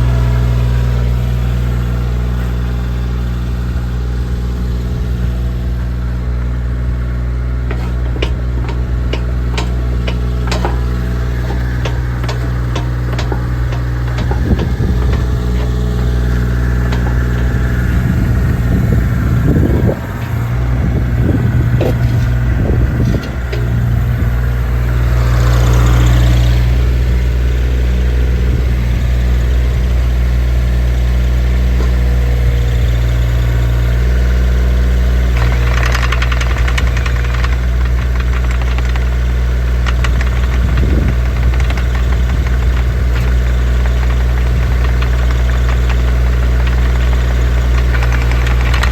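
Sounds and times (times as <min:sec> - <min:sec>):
diesel engine running: 0:00.0 - 0:48.9
clunks and knocks: 0:07.3 - 0:26.5, 0:31.7 - 0:32.2, 0:35.3 - 0:48.9.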